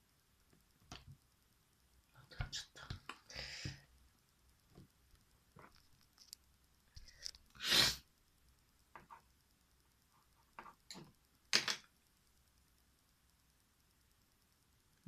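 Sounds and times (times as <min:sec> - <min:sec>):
small clicks: 0:05.1 - 0:07.6
person's sharp breathy bursts: 0:07.6 - 0:08.1.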